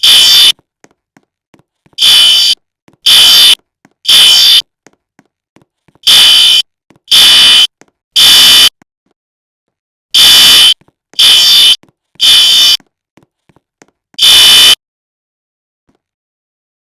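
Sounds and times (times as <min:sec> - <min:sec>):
fire alarm horn blasts: 0:02.0 - 0:04.6, 0:06.1 - 0:08.7, 0:10.1 - 0:12.8, 0:14.2 - 0:14.8.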